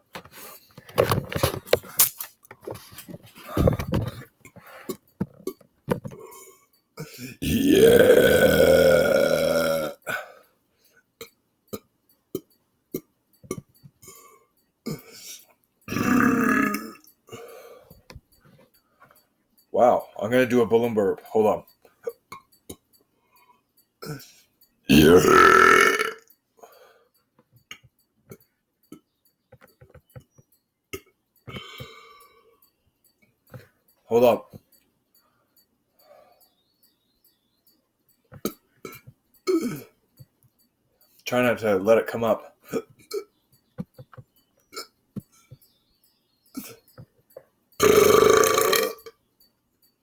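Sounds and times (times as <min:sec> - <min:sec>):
man burping: 0:04.9 - 0:10.4, 0:13.5 - 0:17.5, 0:24.0 - 0:26.3, 0:30.9 - 0:32.4, 0:38.4 - 0:40.0, 0:42.6 - 0:43.3, 0:44.7 - 0:45.0, 0:47.8 - 0:49.1.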